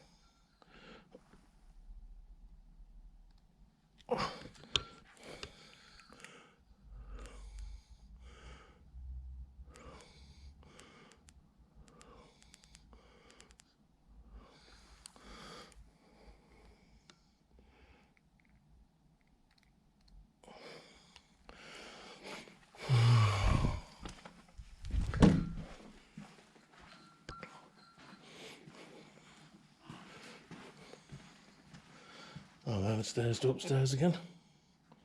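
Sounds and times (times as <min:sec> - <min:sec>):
heavy thump: 0:24.9 - 0:25.7.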